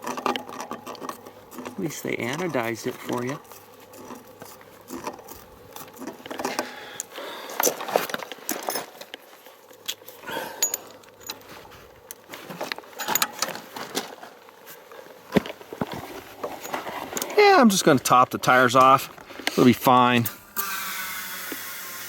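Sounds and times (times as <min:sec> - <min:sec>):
small metal parts clinking: 0:00.0 - 0:11.5, 0:12.9 - 0:14.0.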